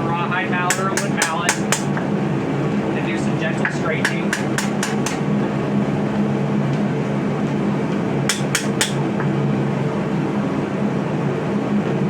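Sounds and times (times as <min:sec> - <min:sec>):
steady drone: 0:00.0 - 0:11.0
mallet tapping steel: 0:00.7 - 0:01.9, 0:04.1 - 0:05.2, 0:08.3 - 0:09.0.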